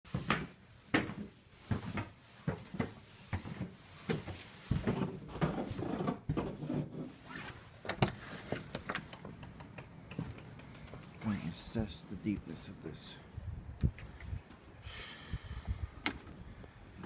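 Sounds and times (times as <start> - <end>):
sharp knocks and clicks: 7.9 - 11.2.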